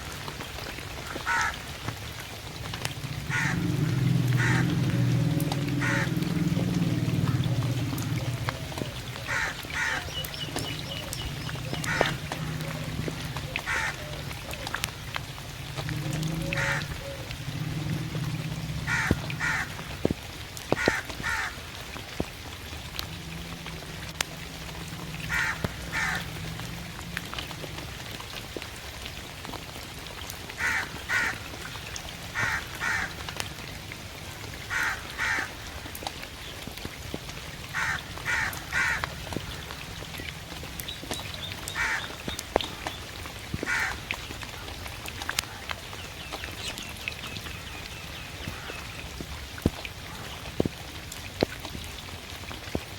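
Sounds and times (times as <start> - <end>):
raindrops tapping on a surface: 0.0 - 52.9
steady rain: 0.0 - 52.9
crow cawing: 1.0 - 1.6, 3.3 - 6.5, 9.3 - 10.2, 11.8 - 12.9, 13.6 - 14.1, 16.5 - 16.9, 18.8 - 19.8, 20.8 - 21.6, 25.2 - 26.3, 30.6 - 31.5, 32.4 - 33.2, 34.7 - 35.6, 37.7 - 39.2, 41.8 - 42.2, 43.7 - 44.0.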